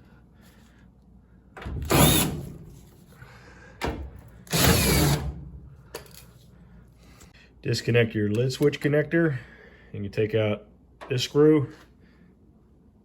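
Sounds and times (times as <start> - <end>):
power drill-driver running: 4.5 - 5.2.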